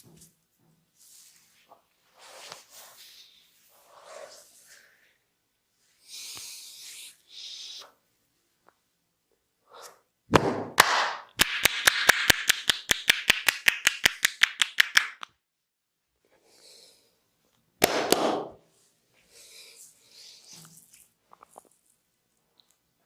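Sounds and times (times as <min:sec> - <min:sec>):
hands slapping skin: 0:10.3 - 0:15.4, 0:17.8 - 0:18.6.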